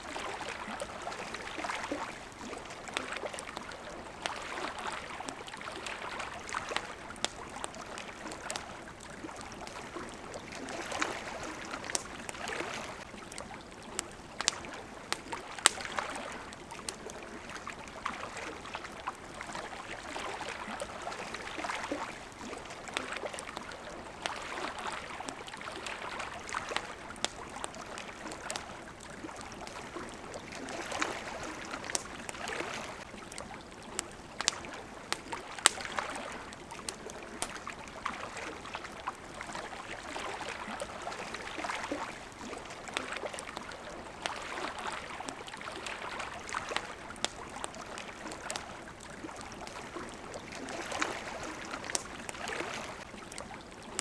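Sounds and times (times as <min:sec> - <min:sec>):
campfire crackling and popping: 0:00.0 - 0:54.0
small waves washing: 0:00.0 - 0:54.0.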